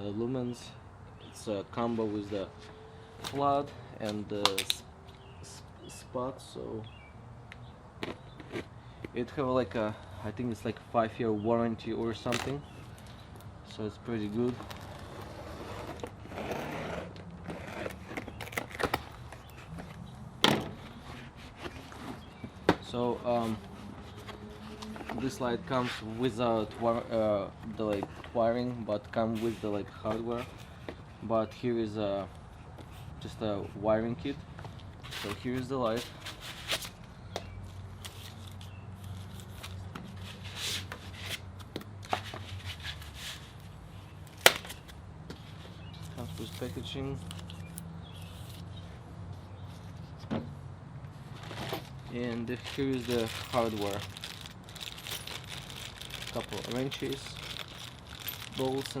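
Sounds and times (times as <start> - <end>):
packaging rustling and scraping: 14.4 - 27.2, 35.0 - 37.0, 51.2 - 59.0
packaging rustle: 51.4 - 59.0.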